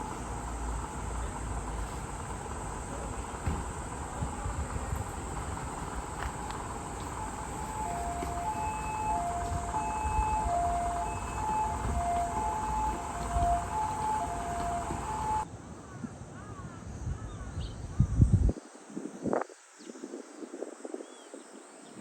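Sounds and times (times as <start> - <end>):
steady background noise: 0.0 - 15.5
two-tone ambulance siren: 0.0 - 15.5.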